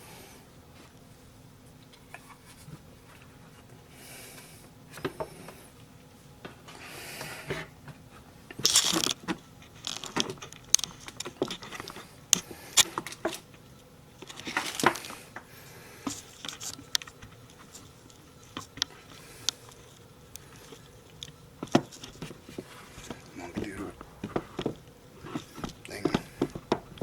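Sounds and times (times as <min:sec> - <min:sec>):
crinkling rustling: 0:08.1 - 0:27.0.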